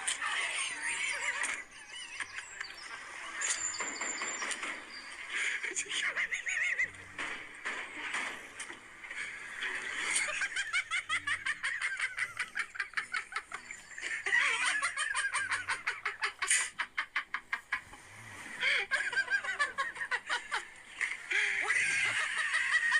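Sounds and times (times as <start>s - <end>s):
people laughing breathlessly: 5.3s - 7.4s, 9.1s - 22.9s.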